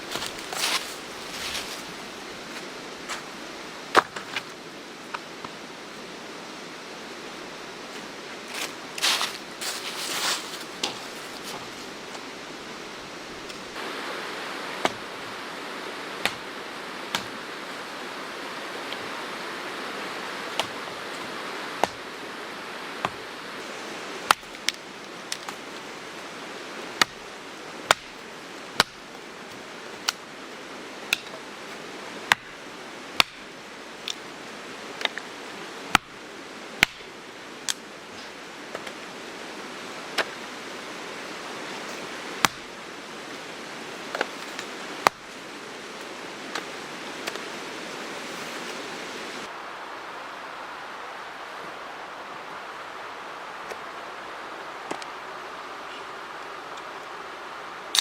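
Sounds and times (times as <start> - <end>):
campfire hissing: 0.0 - 58.0
campfire crackles and pops: 27.8 - 28.2, 28.8 - 29.1, 33.2 - 34.2, 36.8 - 37.8, 42.4 - 42.8.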